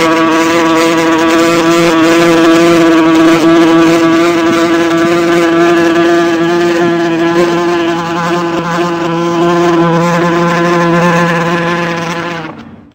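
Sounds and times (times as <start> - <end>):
wasp buzzing in flight: 0.0 - 12.7.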